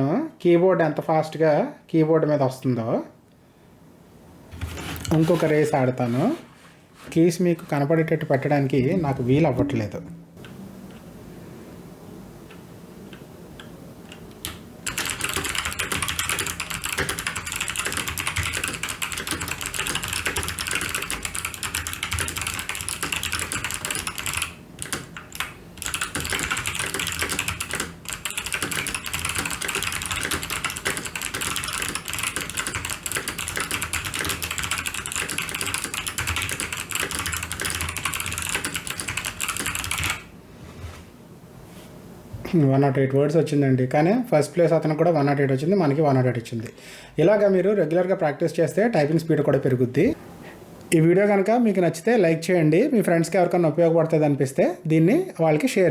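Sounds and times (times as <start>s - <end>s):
fast clicky keyboard typing: 14.1s - 40.3s.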